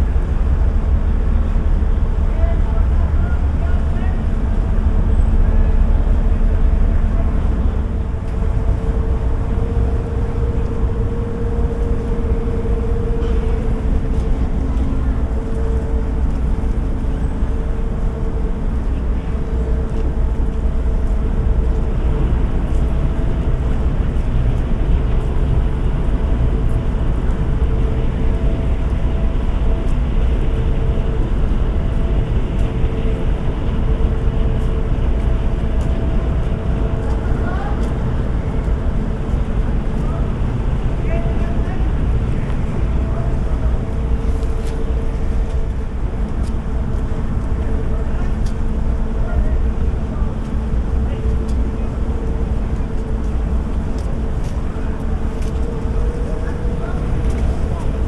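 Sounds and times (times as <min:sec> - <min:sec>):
boat engine rumbling: 0:00.0 - 0:58.0
constant hum: 0:00.0 - 0:58.0.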